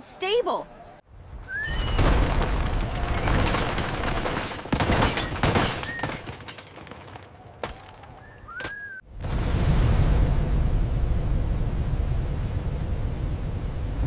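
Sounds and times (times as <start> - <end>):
debris cracking: 1.5 - 9.0.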